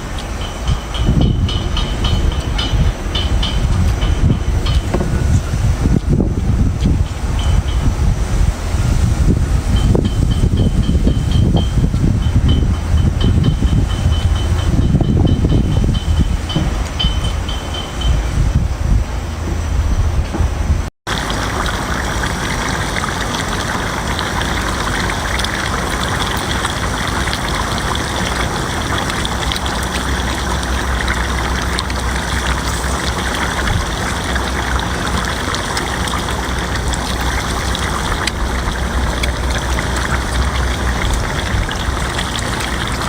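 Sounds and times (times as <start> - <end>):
rushing water: 21.1 - 43.0.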